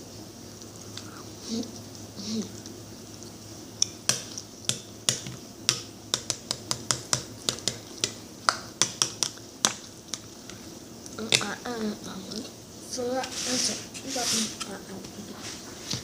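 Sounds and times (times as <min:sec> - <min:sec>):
sharp irregular clicks and taps: 0:03.8 - 0:10.2.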